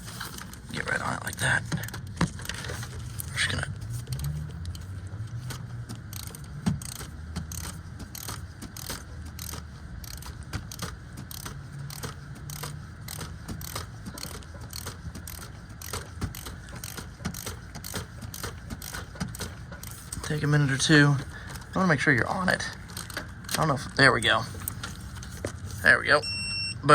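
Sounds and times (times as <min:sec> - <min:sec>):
ratchet wrench clicking: 0:04.1 - 0:20.9.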